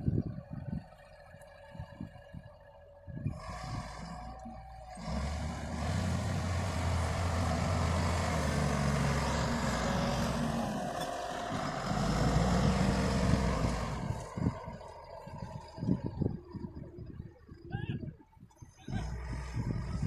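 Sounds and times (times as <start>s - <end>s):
heavy diesel engine running: 0.1s - 17.4s.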